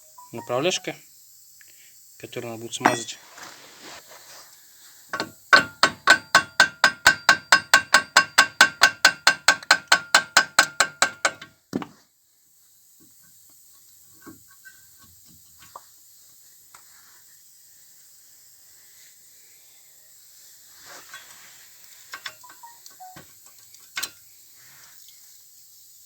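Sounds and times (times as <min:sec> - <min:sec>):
hammer striking metal: 0:02.8 - 0:03.2, 0:05.2 - 0:11.4.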